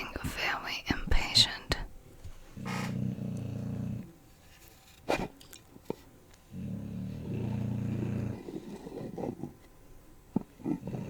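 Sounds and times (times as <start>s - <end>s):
dog growling: 2.6s - 4.2s, 5.1s - 9.7s, 10.3s - 11.0s.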